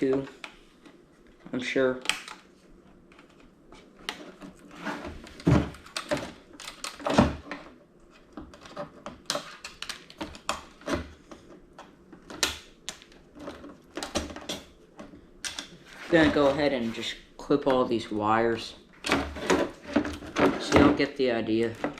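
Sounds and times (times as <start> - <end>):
plastic and metal parts rattling: 19.0 - 21.9.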